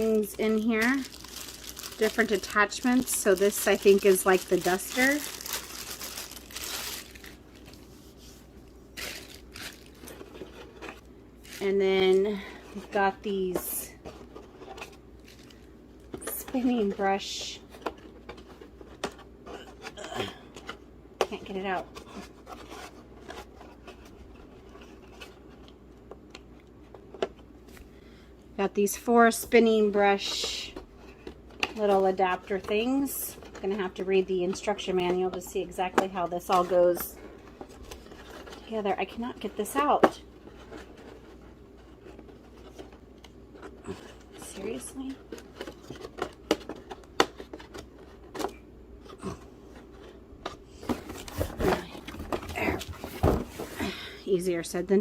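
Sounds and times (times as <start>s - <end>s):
packaging rustling: 0.0s - 11.7s, 49.8s - 54.0s.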